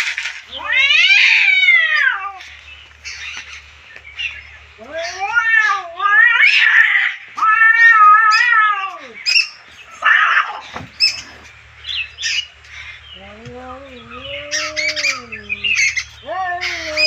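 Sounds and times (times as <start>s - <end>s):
cats hissing: 0.0s - 17.0s
cats yowling: 0.5s - 3.6s, 4.2s - 11.5s, 13.2s - 17.0s
cats short sharp cries: 4.9s - 11.3s.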